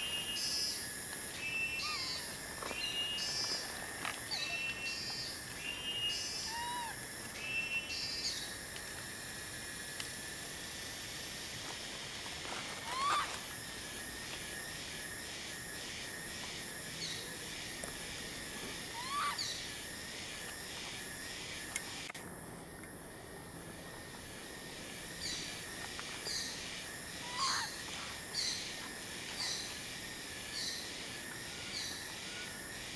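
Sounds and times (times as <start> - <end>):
insect-like hiss: 0.0 - 32.9
sharp rising shrill calls: 1.7 - 2.3, 6.1 - 7.0, 12.8 - 13.3, 18.9 - 19.5
short bird-like calls: 1.7 - 2.3, 5.7 - 7.0, 12.8 - 13.3, 18.9 - 19.5, 27.2 - 27.8.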